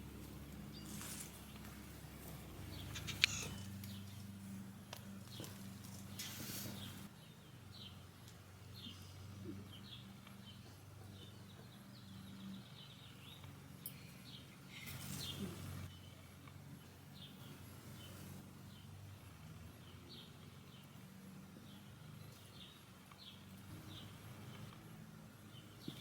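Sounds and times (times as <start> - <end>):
birds chirping: 0.0 - 8.1, 8.7 - 19.0, 21.6 - 24.7, 25.5 - 26.0
steady low hum: 0.0 - 19.2.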